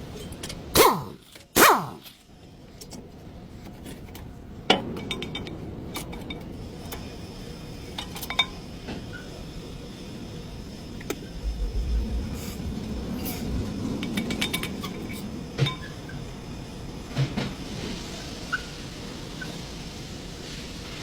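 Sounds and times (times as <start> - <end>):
low background rumble: 11.2 - 15.7.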